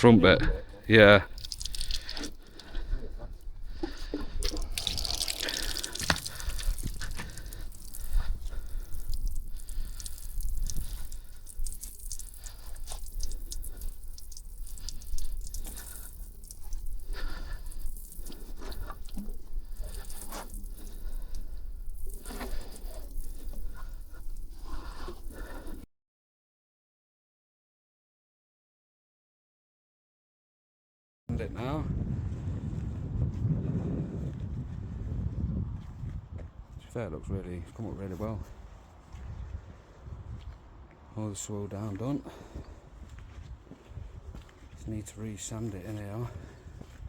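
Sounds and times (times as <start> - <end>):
water dripping and splashing: 0.6 - 25.9.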